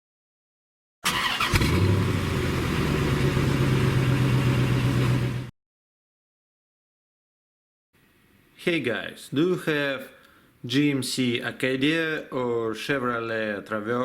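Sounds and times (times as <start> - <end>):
car engine starting and running: 1.0 - 5.5.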